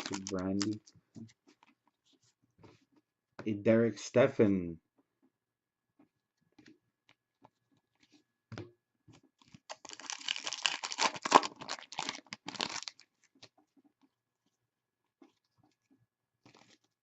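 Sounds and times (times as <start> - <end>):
foil wrapper tearing and crinkling: 0.0 - 0.8, 9.7 - 13.1.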